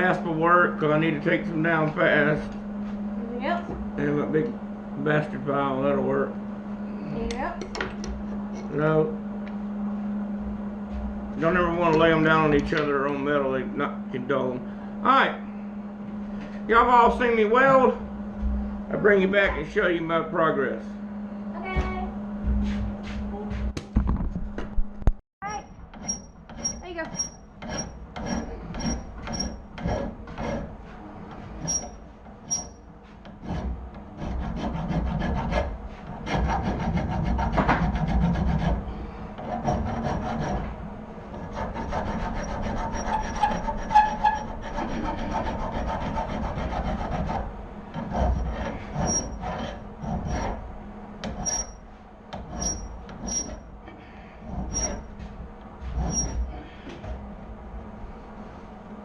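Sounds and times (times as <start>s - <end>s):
hand file rasping on steel: 26.0s - 30.8s, 31.6s - 40.7s, 41.3s - 50.6s, 51.2s - 51.8s, 52.4s - 53.6s, 54.4s - 55.1s, 55.9s - 56.5s.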